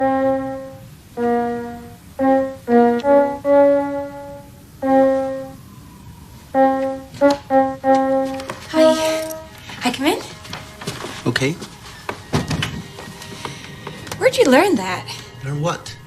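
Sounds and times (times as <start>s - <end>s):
slow piano melody: 0.0s - 9.7s.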